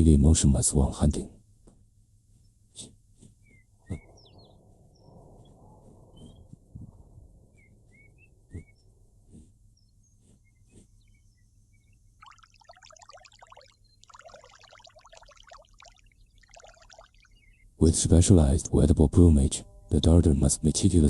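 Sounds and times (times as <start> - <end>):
bird chirps: 3.4 - 6.5, 7.5 - 8.9, 9.8 - 17.8
crackling splashing water: 12.2 - 17.4.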